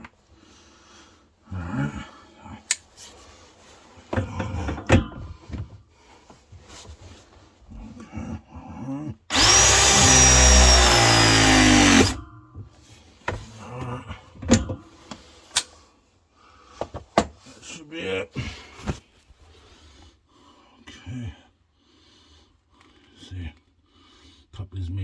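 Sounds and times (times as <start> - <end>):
press tool motor whirring: 9.3 - 12.2
tool handling clicks and knocks: 14.4 - 15.7.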